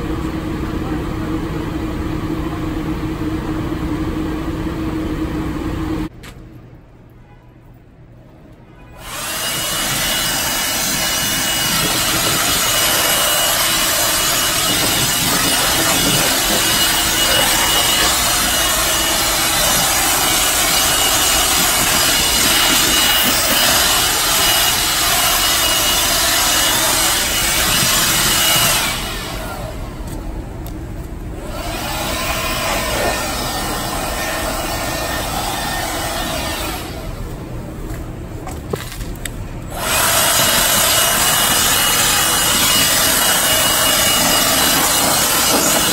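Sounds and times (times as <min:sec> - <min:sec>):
blower running: 0:09.0 - 0:30.6, 0:31.2 - 0:38.6, 0:39.7 - 0:45.9.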